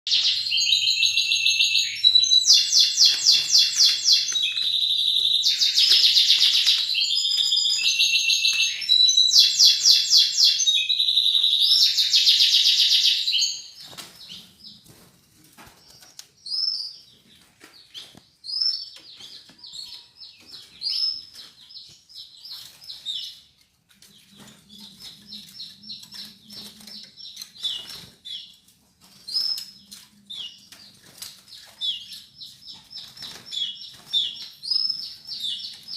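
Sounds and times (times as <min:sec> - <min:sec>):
bird chirps and calls: 0:00.1 - 0:14.8, 0:15.8 - 0:28.6, 0:29.2 - 0:35.9
canary singing trills: 0:00.1 - 0:14.8, 0:15.8 - 0:35.9.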